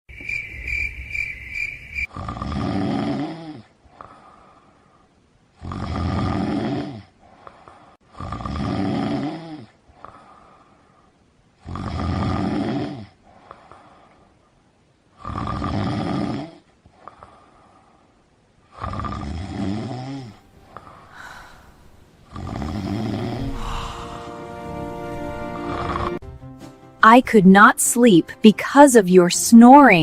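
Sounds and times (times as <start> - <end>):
loud rasping snoring: 2.1 - 3.7, 5.6 - 7.1, 8.1 - 9.7, 11.6 - 13.1, 15.2 - 16.6, 18.8 - 20.9, 22.3 - 24.2, 25.7 - 26.2
breathing out: 20.7 - 22.0, 22.6 - 24.4.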